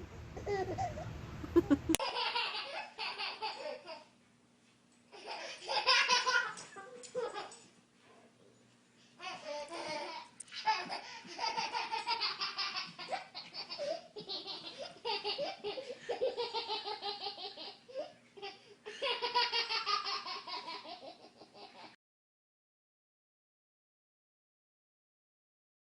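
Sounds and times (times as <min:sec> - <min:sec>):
baby laughing: 0:00.3 - 0:04.1, 0:05.1 - 0:07.7, 0:09.2 - 0:22.0.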